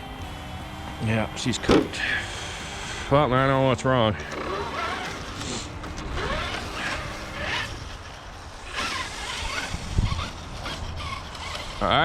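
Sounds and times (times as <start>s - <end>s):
electric motor whining: 0.0s - 12.0s.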